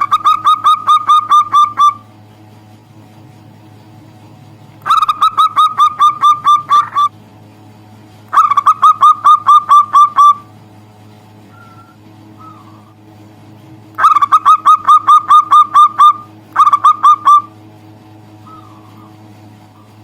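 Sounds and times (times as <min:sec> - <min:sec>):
dove staccato call notes: 0:00.0 - 0:02.1, 0:04.8 - 0:07.1, 0:08.3 - 0:10.5, 0:14.0 - 0:17.6.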